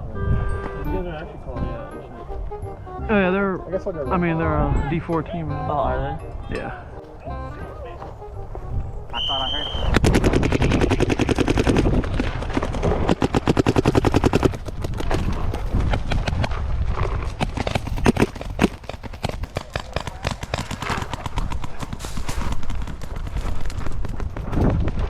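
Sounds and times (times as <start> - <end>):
wind rumble on microphone: 0.0 - 0.7, 8.2 - 18.6, 21.2 - 25.0
paintball markers firing: 10.0 - 25.0.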